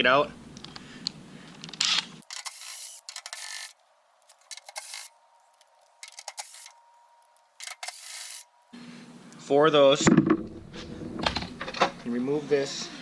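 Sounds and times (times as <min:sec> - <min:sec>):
wire hanger scraping dirt: 0:02.2 - 0:08.8.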